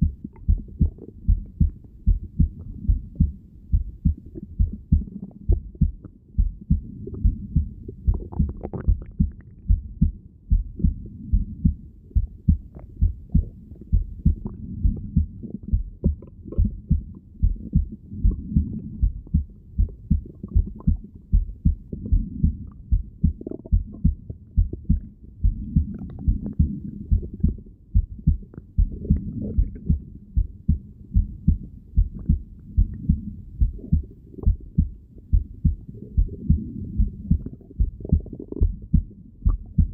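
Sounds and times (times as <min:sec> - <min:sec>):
dull low body rumble: 0:00.0 - 0:39.9
heartbeat through stethoscope: 0:00.0 - 0:39.9.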